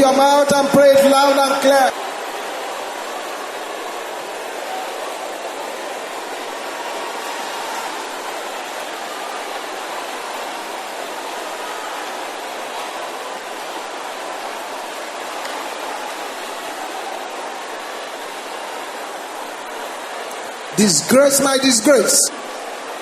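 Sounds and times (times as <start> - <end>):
congregation praying aloud: 0.0 - 3.2, 20.4 - 22.8.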